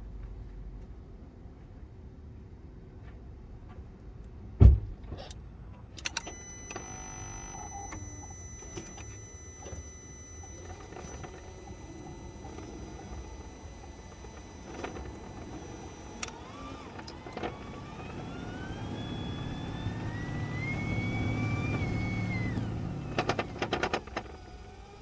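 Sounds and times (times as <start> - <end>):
clicks: 6.0 - 25.0
electric motor whine: 6.2 - 25.0.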